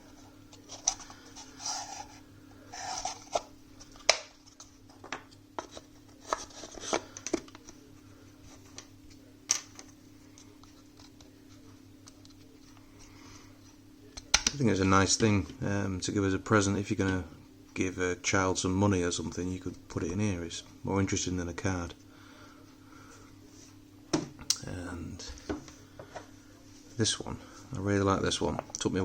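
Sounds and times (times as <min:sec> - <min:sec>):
faint low hum: 0:00.0 - 0:29.0
puzzle box parts scraping: 0:00.6 - 0:03.5.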